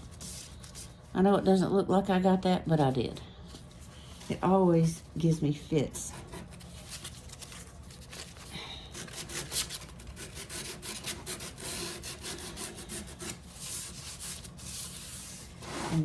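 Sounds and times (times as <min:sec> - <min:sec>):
sandpaper rasping on wood: 0:10.2 - 0:16.0.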